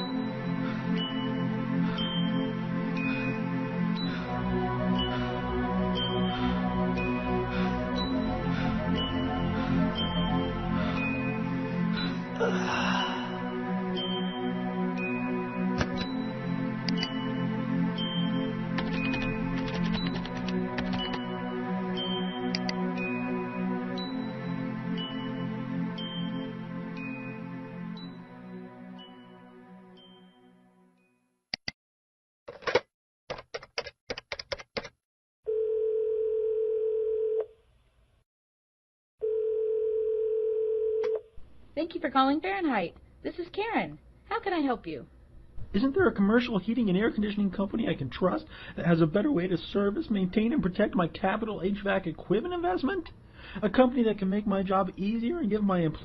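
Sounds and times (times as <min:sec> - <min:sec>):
telephone ringing tone: 0:35.5 - 0:37.5, 0:39.2 - 0:41.2.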